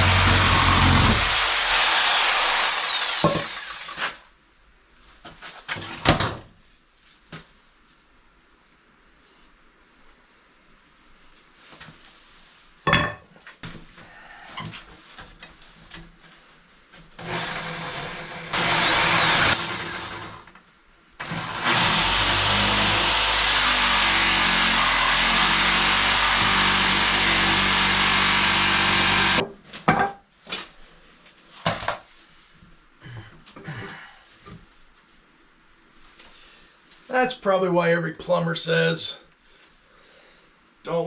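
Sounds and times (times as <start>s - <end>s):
power tool motor running: 0.0s - 4.1s, 17.2s - 20.4s, 21.2s - 29.4s.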